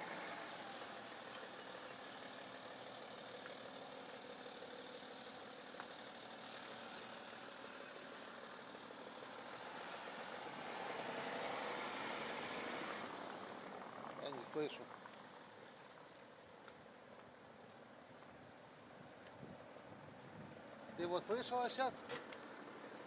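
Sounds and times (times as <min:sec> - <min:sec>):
diesel car engine running: 0:00.0 - 0:16.0.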